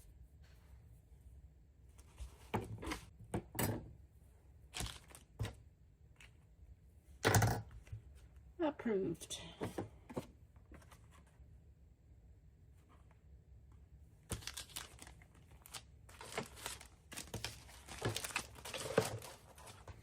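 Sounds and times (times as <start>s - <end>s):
packaging crinkling: 4.8s - 5.3s, 14.3s - 20.0s.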